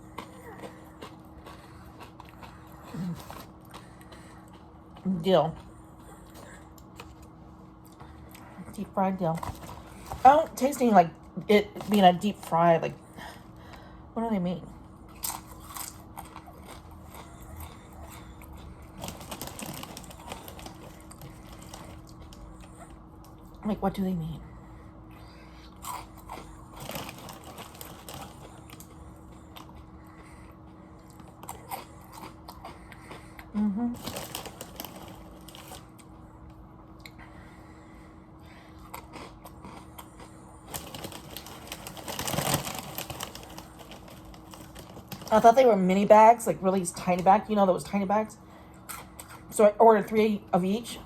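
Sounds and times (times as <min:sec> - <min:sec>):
chewing crunchy chips: 0:00.0 - 0:13.9, 0:14.9 - 0:23.6, 0:25.1 - 0:37.3, 0:38.5 - 0:46.2, 0:48.5 - 0:49.6
faint steady hum: 0:00.0 - 0:51.0.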